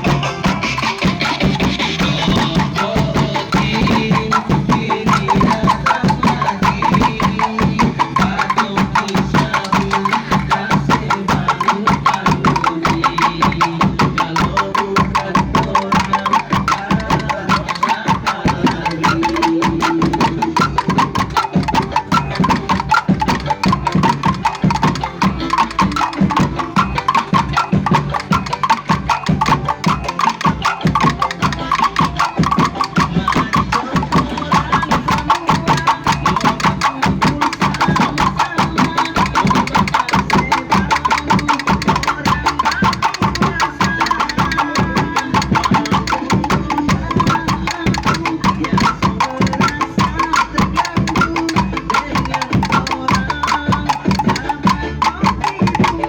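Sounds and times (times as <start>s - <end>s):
music with fast clicking beat: 0.0s - 56.0s.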